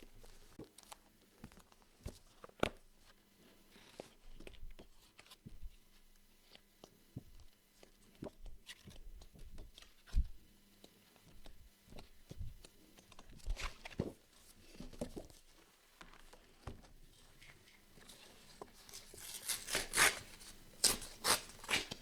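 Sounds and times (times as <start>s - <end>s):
paper tearing or crinkling: 18.9s - 22.0s.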